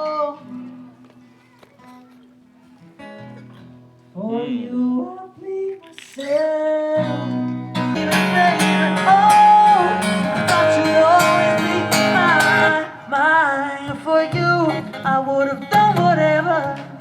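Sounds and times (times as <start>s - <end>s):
strummed acoustic guitar: 2.8s - 4.8s, 6.2s - 17.0s
person singing: 4.2s - 17.0s.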